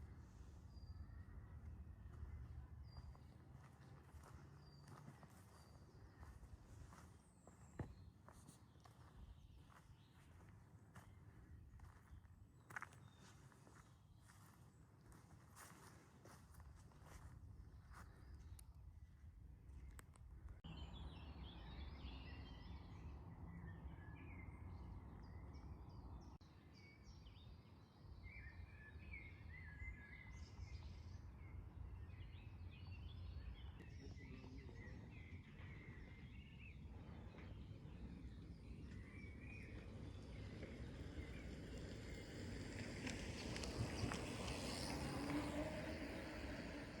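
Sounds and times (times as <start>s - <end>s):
small birds chirping: 0.0s - 47.0s.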